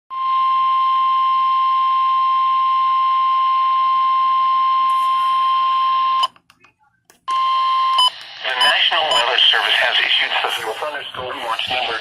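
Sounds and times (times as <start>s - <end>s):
radio hiss: 8.1s - 12.0s.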